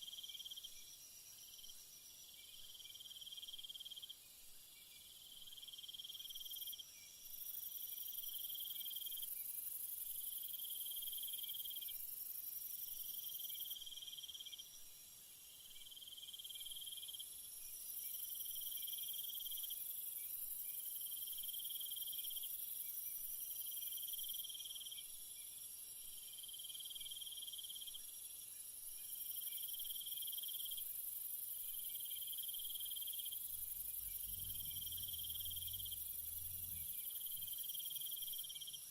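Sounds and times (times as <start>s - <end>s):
trilling insect call: 26.3s - 38.9s
shrill insect buzz: 32.8s - 38.5s
faint low rumble: 33.4s - 37.6s.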